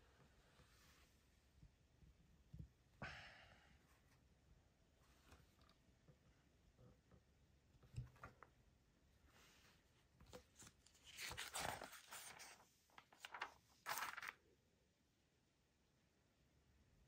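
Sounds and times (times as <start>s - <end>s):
paper rustling and crinkling: 10.3s - 14.4s.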